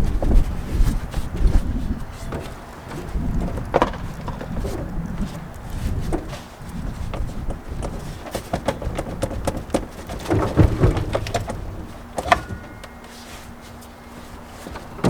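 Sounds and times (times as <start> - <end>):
knocks and thumps: 2.3 - 4.9, 7.0 - 13.0.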